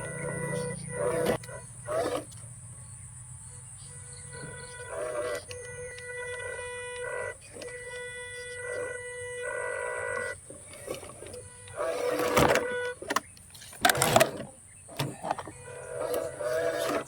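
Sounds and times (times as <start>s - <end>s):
toy electric motor whining: 0.0s - 2.5s, 3.8s - 17.0s
plastic body rattling: 10.2s - 17.0s.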